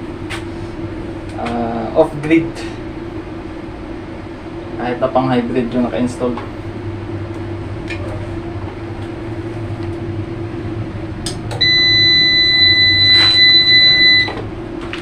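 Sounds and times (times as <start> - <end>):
steady low hum: 0.0 - 15.0
inverter buzzer beep: 11.6 - 14.4.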